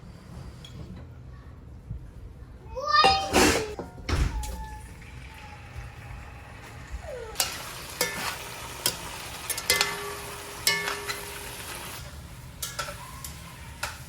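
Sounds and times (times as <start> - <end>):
food sizzling in a pan: 5.0 - 14.0.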